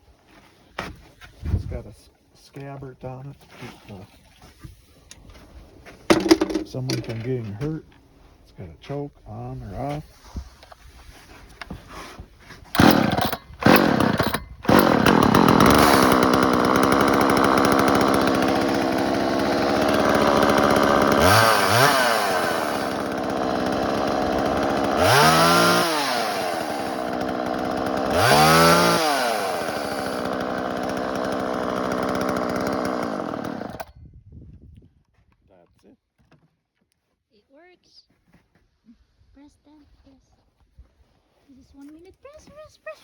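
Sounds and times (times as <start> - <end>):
chainsaw starting and revving: 6.1 - 7.2, 12.7 - 33.9.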